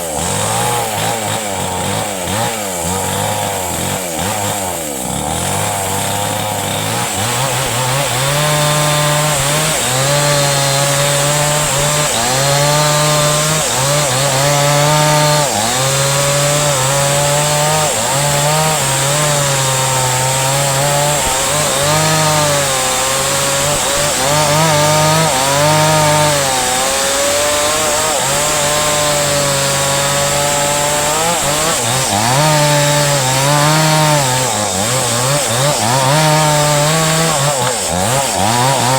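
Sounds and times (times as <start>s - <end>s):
chainsaw cutting hardwood: 0.0s - 38.9s.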